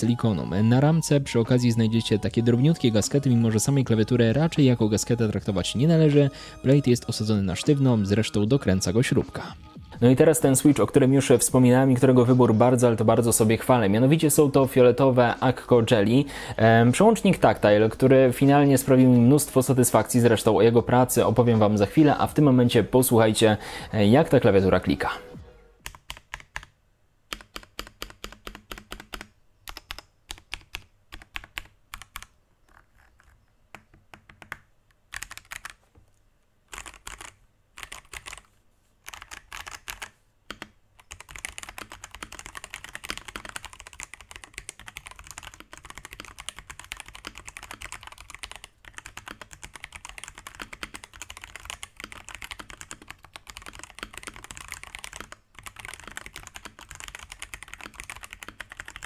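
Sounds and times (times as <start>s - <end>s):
mechanical keyboard typing: 25.8s - 35.8s, 36.7s - 59.0s.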